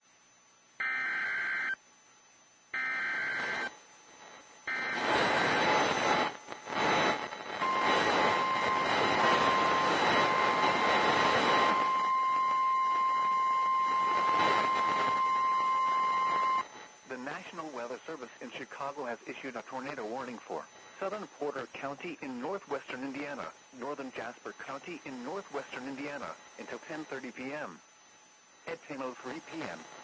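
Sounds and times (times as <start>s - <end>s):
steady warning alarm tone: 0.8s - 1.8s, 2.7s - 3.7s, 4.6s - 19.1s
buzzy data bursts: 2.8s - 27.8s
hissing radio static: 2.8s - 27.9s, 28.6s - 30.0s.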